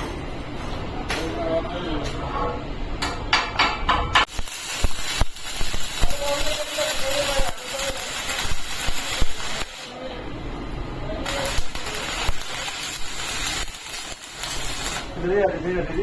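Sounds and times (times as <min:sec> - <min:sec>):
welding arc crackling and hissing: 0:04.1 - 0:16.0.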